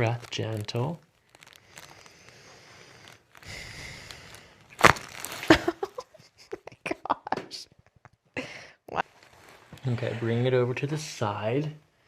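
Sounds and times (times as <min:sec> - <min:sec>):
neck cracking: 0:00.0 - 0:06.6
person breathing out slowly: 0:01.2 - 0:05.4.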